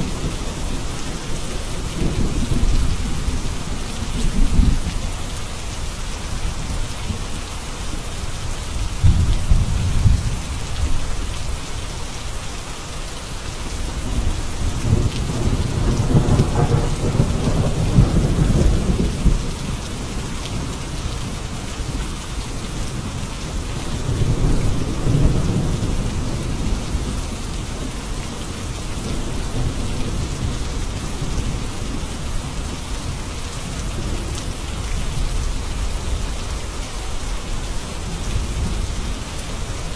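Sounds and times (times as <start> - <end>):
distant thunder rumbling: 0.0 - 5.4, 8.8 - 11.4, 13.8 - 22.1, 22.8 - 32.8
heavy rain falling: 0.0 - 39.9.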